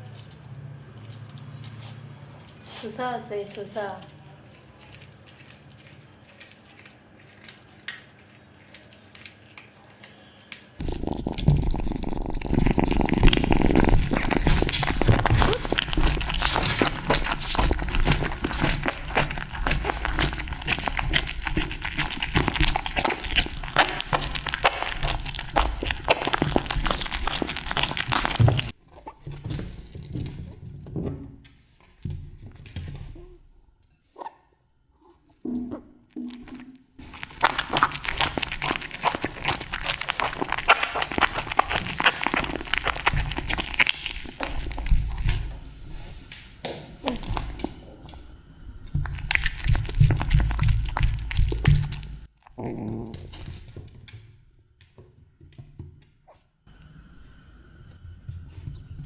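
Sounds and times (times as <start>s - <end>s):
cat chewing crunchily: 4.4s - 10.0s, 10.8s - 28.8s, 36.4s - 53.8s.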